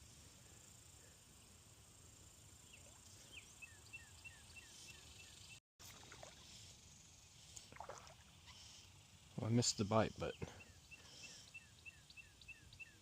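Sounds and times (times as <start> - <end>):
high insect hiss: 0.0 - 13.0.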